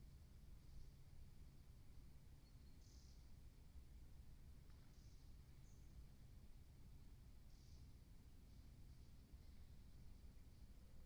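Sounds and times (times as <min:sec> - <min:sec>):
faint high bird chirps: 0:02.3 - 0:03.4, 0:07.5 - 0:08.0.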